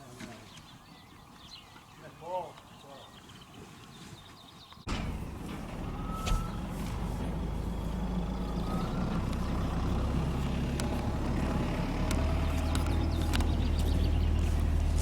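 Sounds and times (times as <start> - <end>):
vehicle engine running: 4.9 - 15.0.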